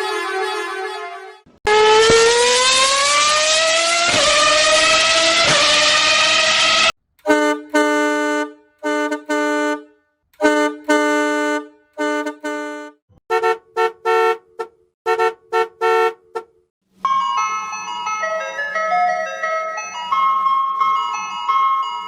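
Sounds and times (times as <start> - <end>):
higher-pitched horn tooting: 0.0 - 16.5
loud engine-like sound: 1.7 - 7.0
vehicle horn honking: 4.1 - 16.6
ice cream truck jingle: 17.0 - 22.0.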